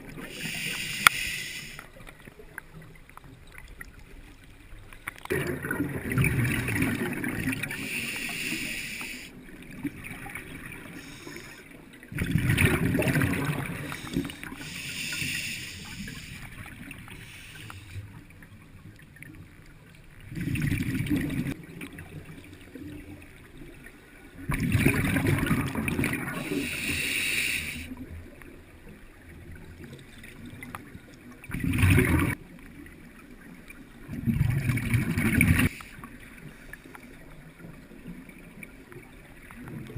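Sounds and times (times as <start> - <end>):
regulator hissing inhale: 0.2 - 2.0, 7.7 - 9.4, 10.8 - 11.8, 13.7 - 18.0, 26.4 - 27.9, 35.6 - 36.7
bubbling rush of exhaled air: 12.1 - 16.4.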